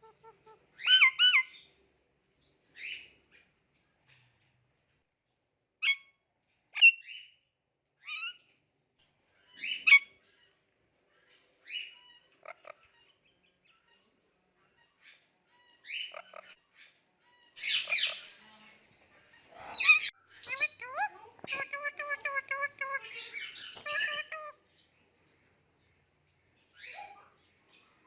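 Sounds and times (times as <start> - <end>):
parakeet chirping and squawking: 0.0 - 1.6, 5.8 - 6.1, 6.8 - 7.2, 8.0 - 8.5, 9.5 - 10.2, 11.7 - 13.2, 15.0 - 18.4, 19.4 - 24.8.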